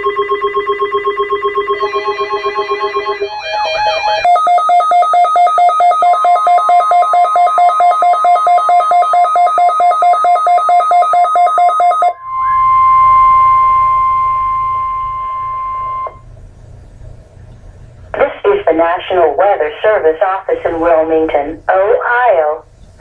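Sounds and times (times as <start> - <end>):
rapid electronic beeping: 0.0 - 16.2
steady warning alarm tone: 0.0 - 16.3.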